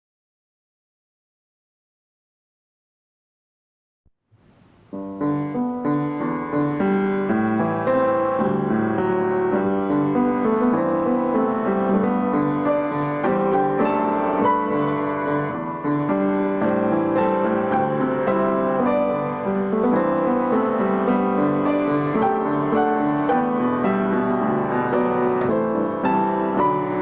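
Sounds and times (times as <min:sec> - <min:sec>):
solo piano music: 0:04.4 - 0:27.0.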